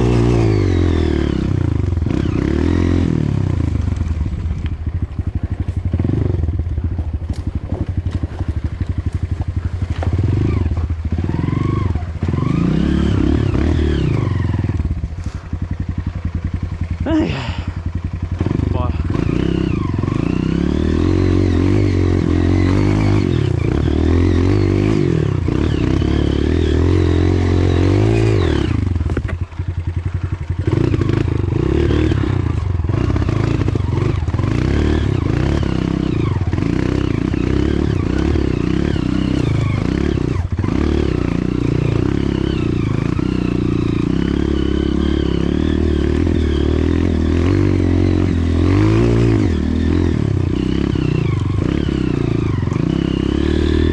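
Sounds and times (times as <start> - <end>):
motorcycle engine revving: 0.0 - 53.9
bike clattering and scraping: 3.5 - 11.3, 14.1 - 15.9, 28.0 - 31.3.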